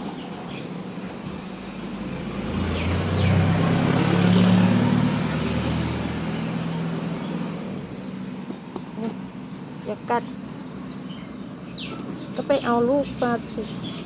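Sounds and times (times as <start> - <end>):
motor vehicle passing by: 1.3 - 9.3.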